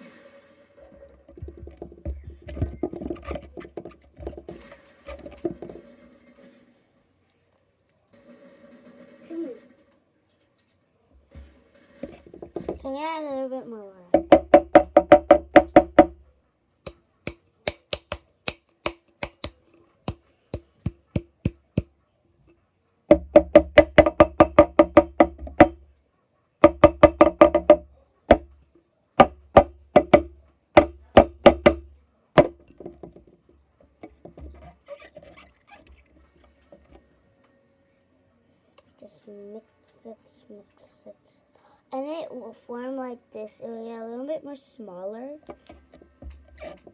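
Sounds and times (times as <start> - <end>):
utensil knocking on container: 1.3 - 5.8, 12.0 - 12.8, 14.2 - 16.1, 23.1 - 25.8, 29.2 - 33.4.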